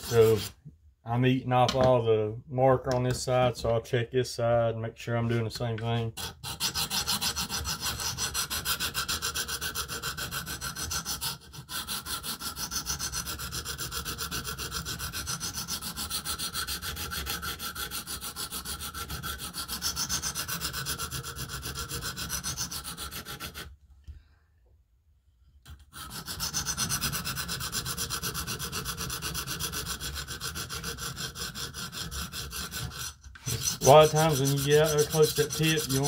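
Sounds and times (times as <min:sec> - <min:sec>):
sharpening stone rubbing on knife: 0:00.0 - 0:00.6, 0:06.2 - 0:23.7, 0:25.9 - 0:36.0.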